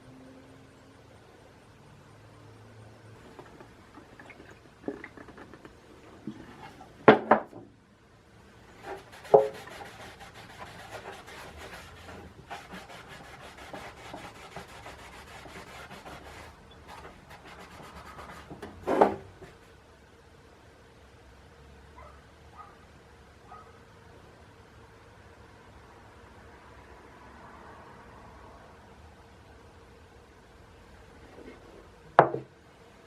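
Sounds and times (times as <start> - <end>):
hand scrubbing metal parts: 8.7 - 19.6.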